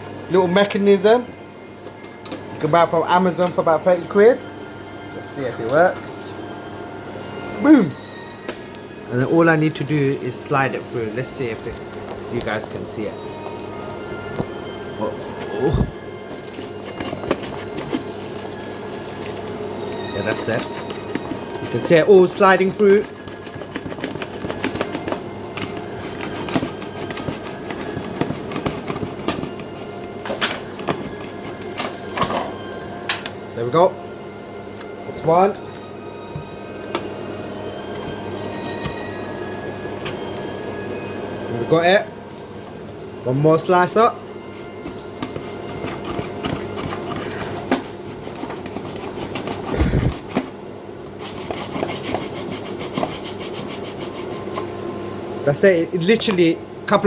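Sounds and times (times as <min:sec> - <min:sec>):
potato scraping on slicer: 0:20.1 - 0:30.0, 0:45.0 - 0:50.5, 0:51.1 - 0:54.7
potato scraping across slicer blade: 0:45.4 - 0:50.5, 0:51.2 - 0:54.7.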